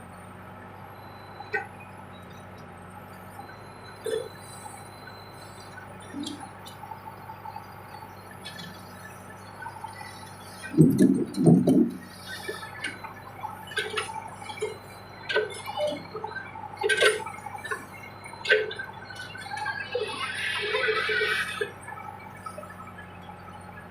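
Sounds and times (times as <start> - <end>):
faint engine hum: 0.0 - 23.9.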